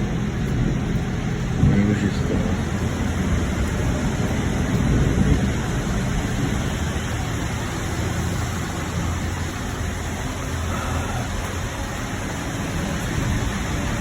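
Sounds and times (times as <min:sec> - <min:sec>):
distant thunder rumbling: 0:00.0 - 0:11.2.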